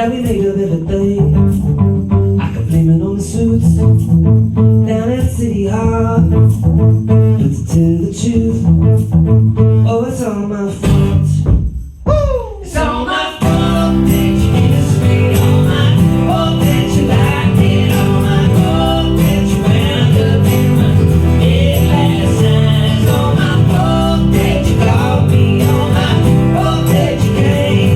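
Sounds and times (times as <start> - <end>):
person singing: 12.1 - 27.9
live band playing: 13.4 - 27.9.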